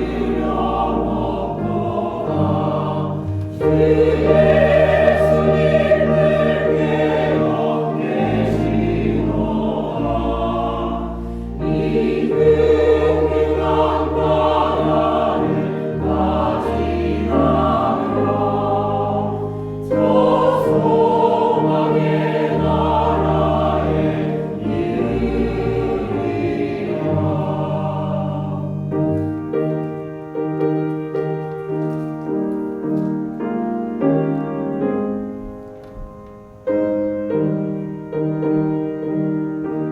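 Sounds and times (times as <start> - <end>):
choir singing a hymn: 0.0 - 30.6
piano: 0.0 - 39.9.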